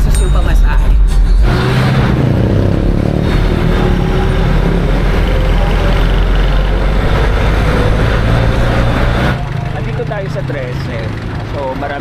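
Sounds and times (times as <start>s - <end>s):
road noise: 0.0s - 12.0s
vehicle engine running: 0.0s - 12.0s.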